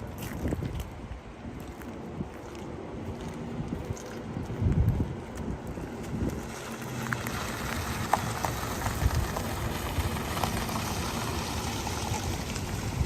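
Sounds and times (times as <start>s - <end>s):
rain and wind rushing: 4.8s - 13.0s.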